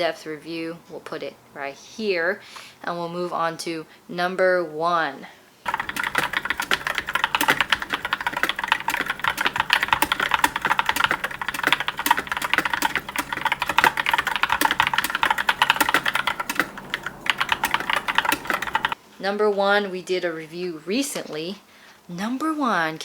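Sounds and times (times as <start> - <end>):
typing on mechanical keyboard: 5.7 - 19.0.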